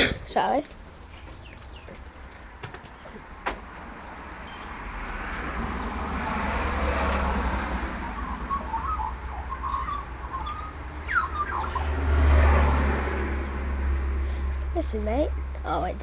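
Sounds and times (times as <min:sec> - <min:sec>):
birds chirping: 0:00.0 - 0:16.0
bird whistle sliding downward: 0:06.9 - 0:12.7.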